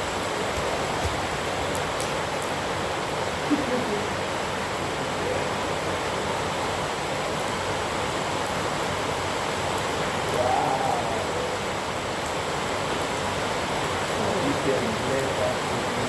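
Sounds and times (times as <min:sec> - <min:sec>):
steady rain hiss: 0:00.0 - 0:16.0
faint voice: 0:10.4 - 0:11.6.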